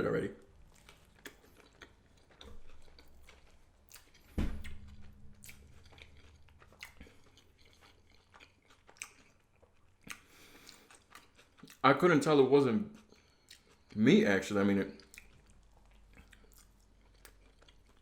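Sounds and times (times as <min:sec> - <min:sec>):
person biting and chewing burger: 0:00.5 - 0:11.8.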